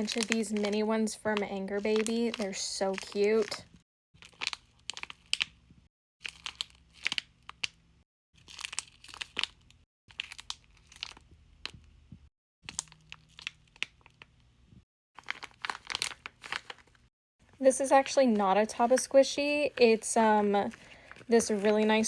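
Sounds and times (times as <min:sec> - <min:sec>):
plastic bags crinkling: 0:00.0 - 0:05.4, 0:08.4 - 0:11.8, 0:15.2 - 0:22.0.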